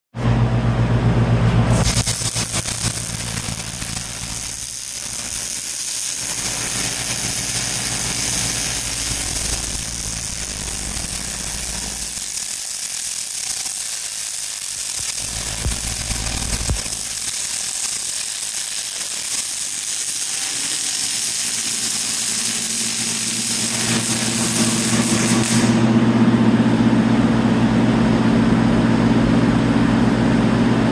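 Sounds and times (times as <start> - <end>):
welding arc crackling: 1.6 - 28.1.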